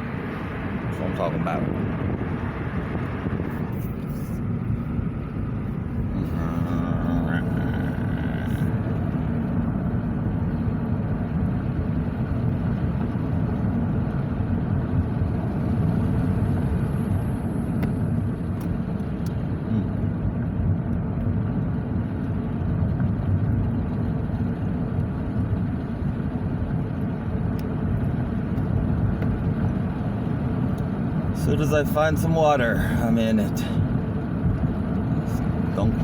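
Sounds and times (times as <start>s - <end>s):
wind buffeting microphone: 0.0s - 7.4s.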